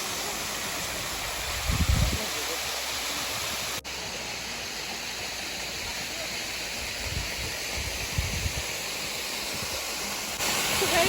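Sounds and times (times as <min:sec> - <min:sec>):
waterfall rushing: 0:00.0 - 0:11.0
wind buffeting microphone: 0:01.3 - 0:02.2, 0:06.9 - 0:08.7.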